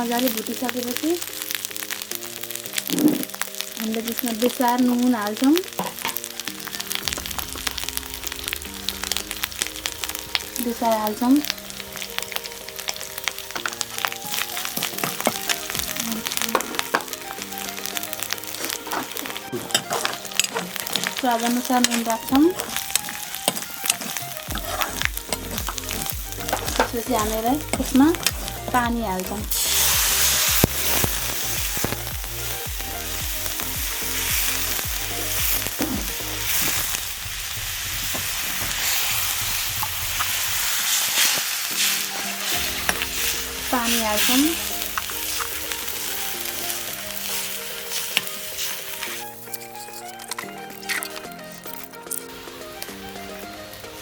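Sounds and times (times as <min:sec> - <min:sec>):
background music with held notes: 0:00.0 - 0:54.0
paste sizzling and crackling in oil: 0:00.0 - 0:54.0
spoon scraping pan: 0:10.3 - 0:32.1, 0:38.1 - 0:52.8.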